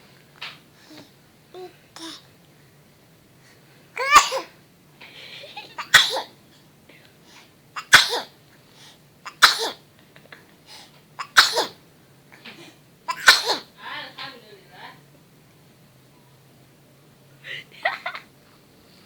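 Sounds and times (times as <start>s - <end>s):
baby sneezing: 4.0s - 4.6s, 5.8s - 6.4s, 7.8s - 8.4s, 9.3s - 9.8s, 11.2s - 11.8s, 13.1s - 13.7s.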